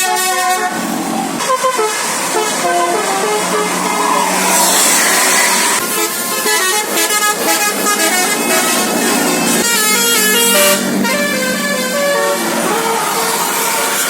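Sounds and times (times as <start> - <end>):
multi-tone bus horn melody: 0.0 - 14.0
rush of noise: 0.8 - 6.4.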